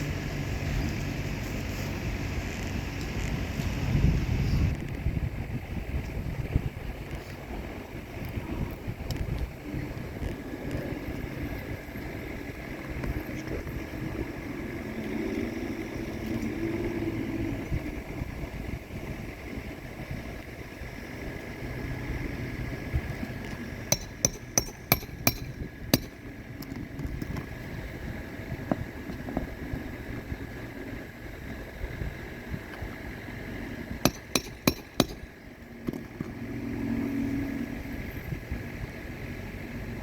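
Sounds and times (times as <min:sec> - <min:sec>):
low outdoor rumble: 0:00.0 - 0:40.0
hammer striking: 0:23.9 - 0:26.2, 0:34.0 - 0:35.2.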